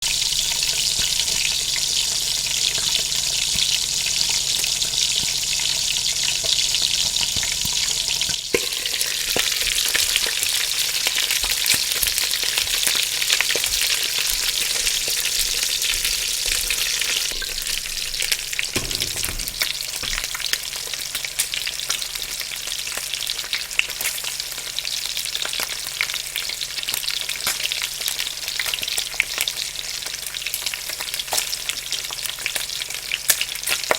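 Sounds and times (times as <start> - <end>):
food sizzling in a frying pan: 0.0 - 33.9
sharp click: 18.8 - 19.9.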